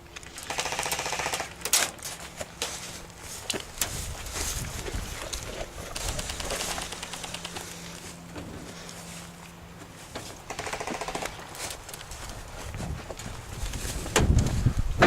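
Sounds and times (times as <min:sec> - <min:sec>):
airsoft guns firing bursts: 0:00.4 - 0:01.6, 0:10.5 - 0:11.5.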